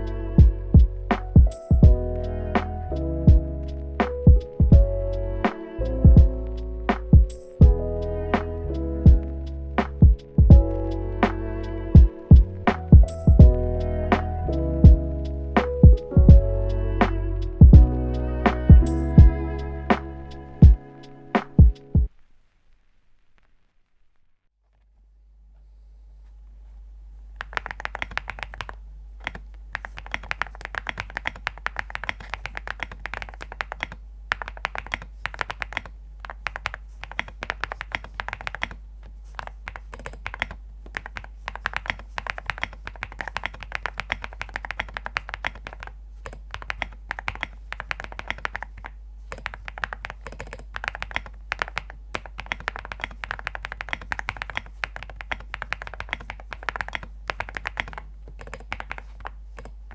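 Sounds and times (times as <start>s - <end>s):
mechanical keyboard typing: 27.4s - 59.9s.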